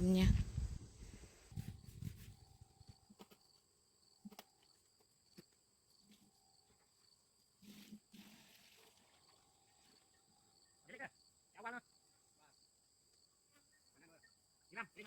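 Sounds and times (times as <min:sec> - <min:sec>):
soft rustle: 0:00.4 - 0:03.6, 0:07.6 - 0:10.1.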